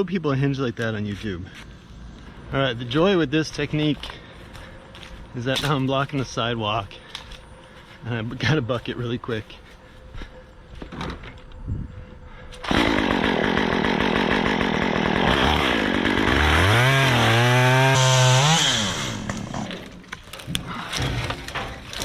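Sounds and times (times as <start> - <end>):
chainsaw cutting wood: 12.6 - 22.0.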